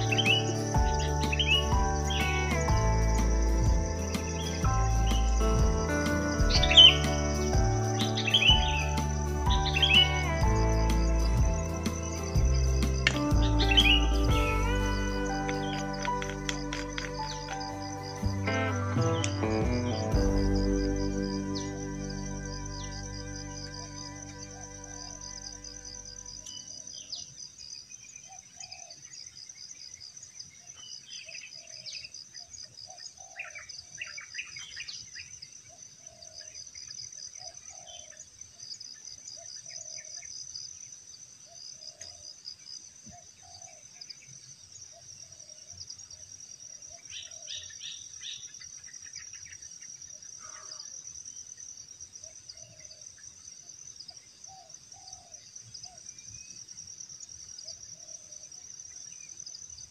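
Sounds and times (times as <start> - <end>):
pulsing insect trill: 0.0 - 27.8
bird chirps: 0.0 - 29.1.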